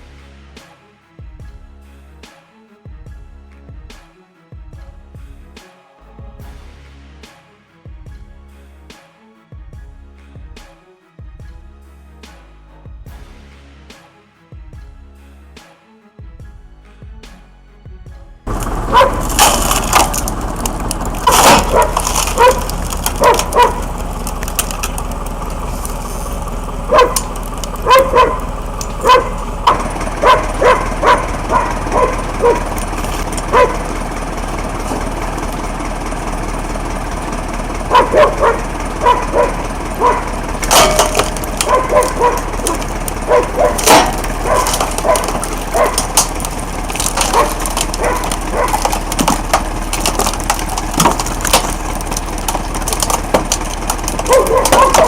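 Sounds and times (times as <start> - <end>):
log splitter humming: 18.5 - 55.0
wood cracking and splintering: 18.5 - 55.0.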